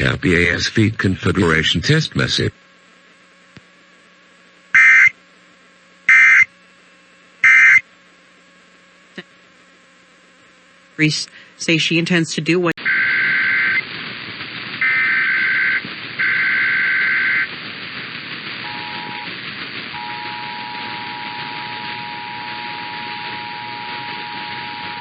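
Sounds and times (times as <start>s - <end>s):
radio static: 0.0s - 3.4s, 4.7s - 5.2s, 6.0s - 6.6s, 7.4s - 7.9s, 11.0s - 25.0s
two-tone attention signal: 4.8s - 5.1s, 6.1s - 6.5s, 7.4s - 7.8s, 18.7s - 19.3s, 20.0s - 25.0s
warbling digital data screech: 4.8s - 5.1s, 6.1s - 6.5s, 7.4s - 7.8s, 12.8s - 13.8s, 14.8s - 17.5s.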